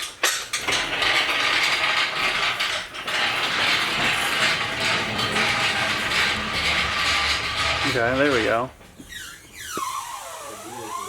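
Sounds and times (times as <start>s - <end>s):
metallic caster rattle: 0.0s - 8.8s.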